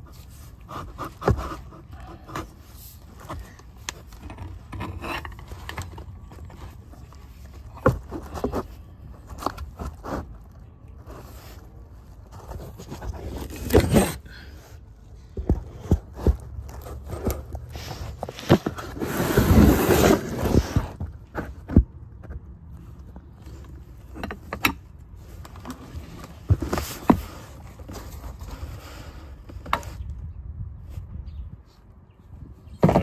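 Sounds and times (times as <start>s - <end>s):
rough scraping noise: 15.7s - 21.6s.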